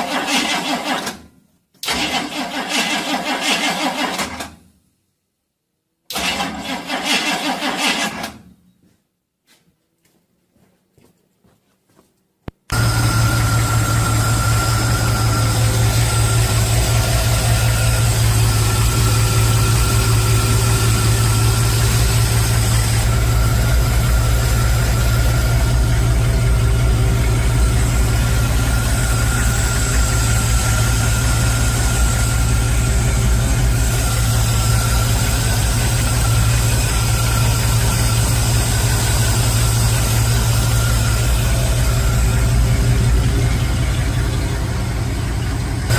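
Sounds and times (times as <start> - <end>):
truck engine idling: 12.7 - 45.9.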